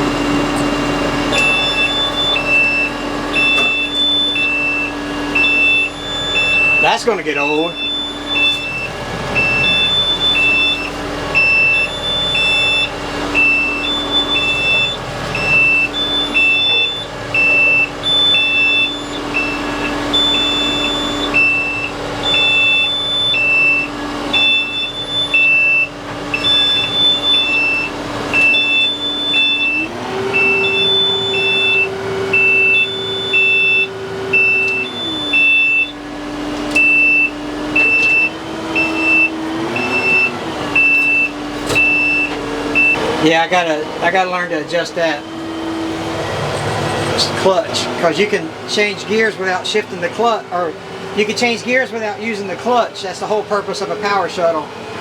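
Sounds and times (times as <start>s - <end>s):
tractor diesel engine running: 0.0s - 55.0s
warning beeper: 0.2s - 46.4s
higher beep: 1.3s - 36.0s.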